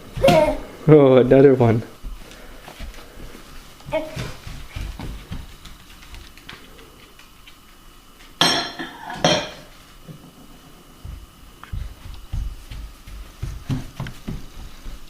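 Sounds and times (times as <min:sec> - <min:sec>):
dishes clinking in dishwasher: 0:08.4 - 0:10.2.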